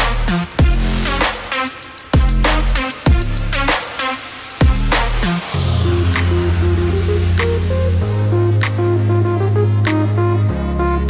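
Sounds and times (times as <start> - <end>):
heavy bass drum: 0.0 - 1.6, 2.2 - 3.9, 4.6 - 9.0
electronic music: 0.0 - 11.0.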